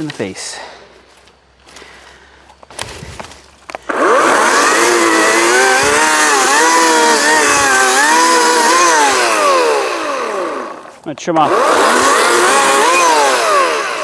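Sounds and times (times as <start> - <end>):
chainsaw revving: 3.7 - 14.0.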